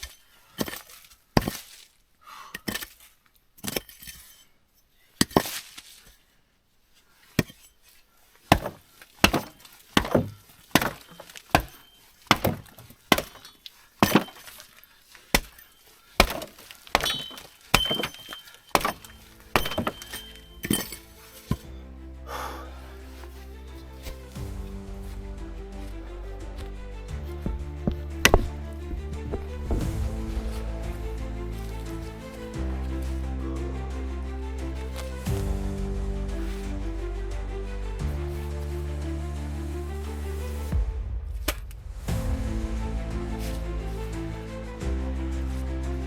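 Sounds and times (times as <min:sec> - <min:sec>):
sharp knocks with clinking ring: 0:17.0 - 0:21.1.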